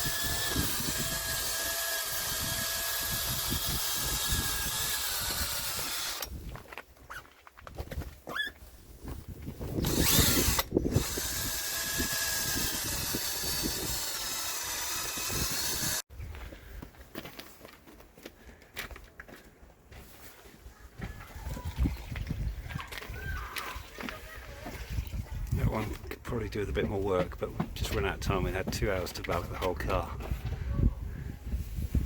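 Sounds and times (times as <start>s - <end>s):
electric drill polishing plastic: 0.0s - 6.3s, 9.8s - 16.0s.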